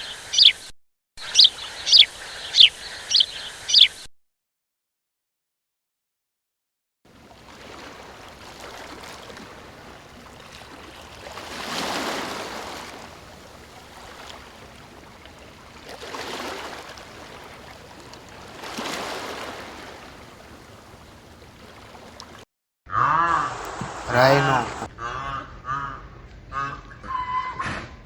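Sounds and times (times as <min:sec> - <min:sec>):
rushing water surges: 0:07.2 - 0:22.4, 0:23.3 - 0:24.9.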